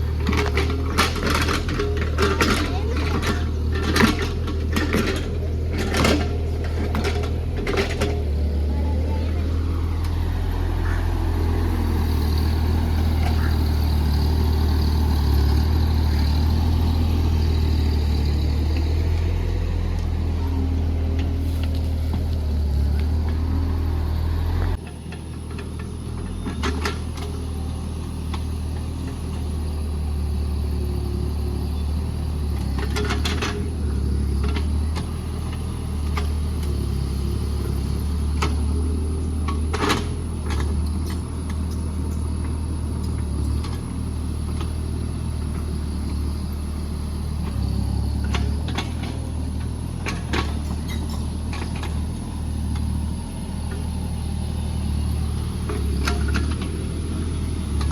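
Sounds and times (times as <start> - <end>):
diesel engine humming: 0.0 - 57.9.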